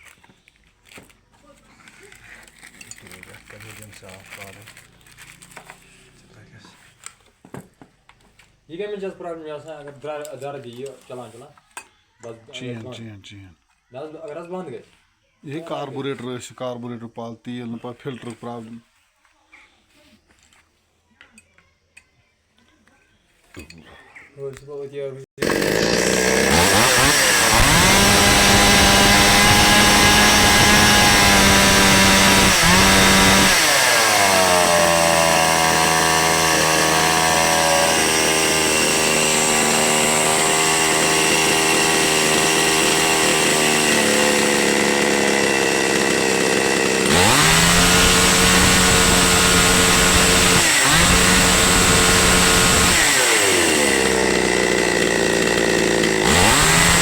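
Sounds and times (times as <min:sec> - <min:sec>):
chainsaw engine running: 0:25.4 - 0:57.0.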